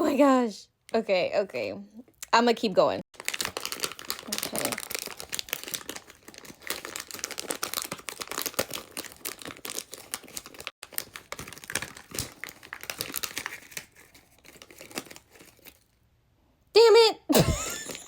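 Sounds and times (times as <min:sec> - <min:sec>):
plastic packaging crumpling and tearing: 0:03.1 - 0:16.0.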